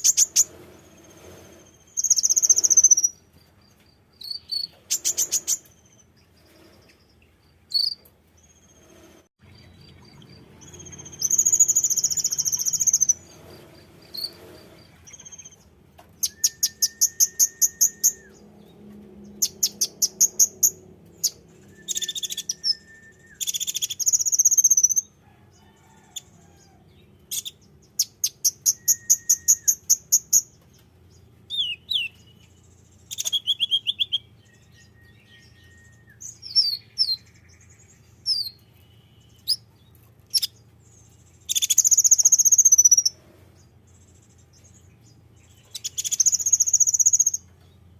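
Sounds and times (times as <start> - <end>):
songbird trilling: 0.0 - 3.3, 9.4 - 25.1, 27.3 - 39.7, 40.3 - 43.2, 44.0 - 47.5
bird chirps: 0.0 - 47.9.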